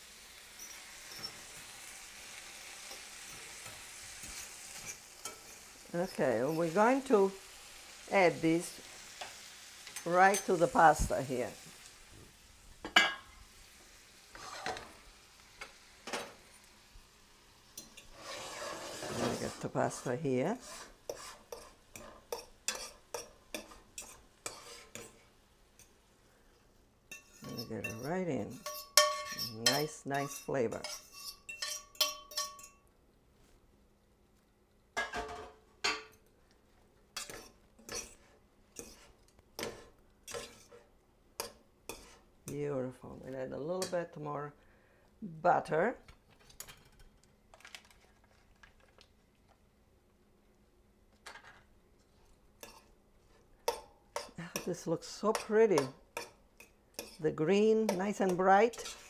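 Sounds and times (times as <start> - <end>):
asparagus sizzling in a frying pan: 0.0 - 31.0, 53.6 - 59.0
utensil scraping and clinking on pan: 0.5 - 7.3, 9.2 - 11.4, 14.3 - 14.9, 17.7 - 26.0, 27.1 - 32.8, 37.2 - 42.6, 52.6 - 59.0.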